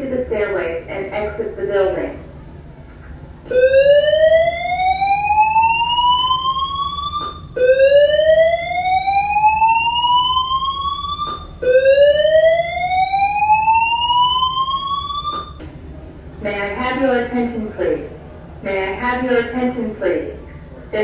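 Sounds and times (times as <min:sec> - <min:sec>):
fire alarm whoop tone: 0:03.5 - 0:15.6.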